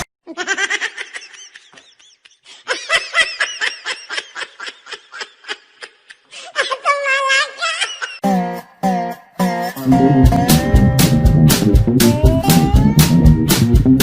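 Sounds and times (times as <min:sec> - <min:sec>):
high-pitched laughter: 0:00.2 - 0:08.2.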